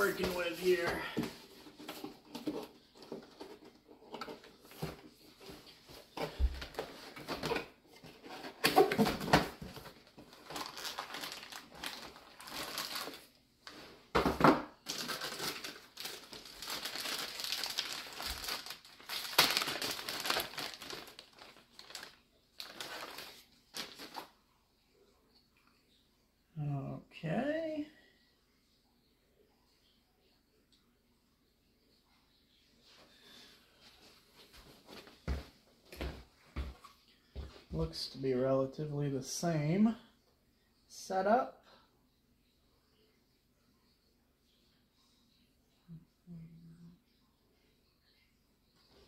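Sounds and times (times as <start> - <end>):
cardboard and plastic bag crinkling: 0.0 - 24.4.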